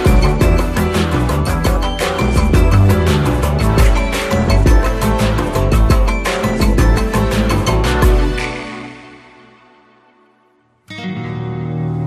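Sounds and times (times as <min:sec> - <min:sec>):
plucked guitar music: 0:00.0 - 0:08.6, 0:10.8 - 0:12.0
background music: 0:00.0 - 0:12.0.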